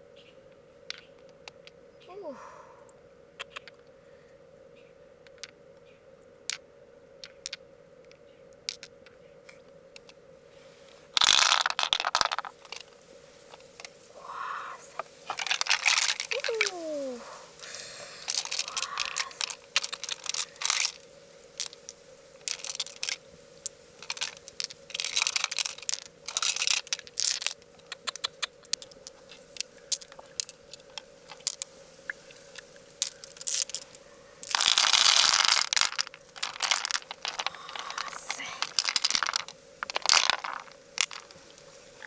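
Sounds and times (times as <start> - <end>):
rustling rush: 10.5 - 24.4.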